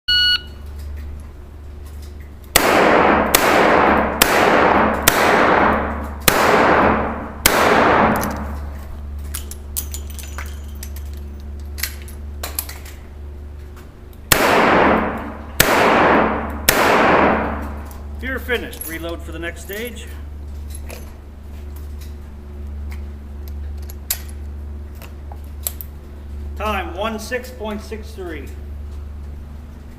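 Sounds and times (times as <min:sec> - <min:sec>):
revolver gunshots: 0:02.5 - 0:08.7, 0:14.3 - 0:17.9.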